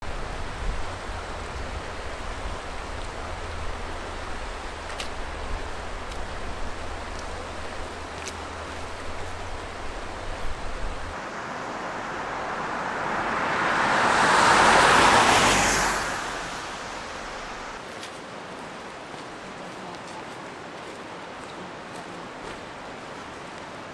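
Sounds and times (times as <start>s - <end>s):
wind buffeting microphone: 0.0s - 11.2s.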